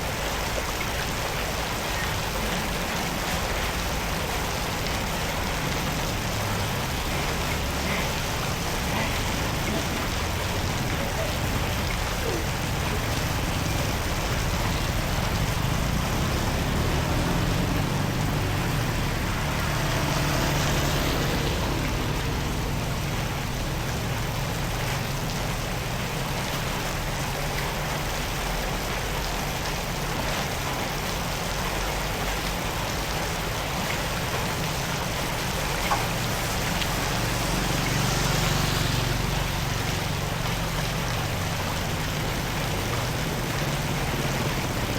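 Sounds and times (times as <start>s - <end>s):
rain: 0.0s - 44.9s
rush of flowing floodwater: 0.0s - 44.9s.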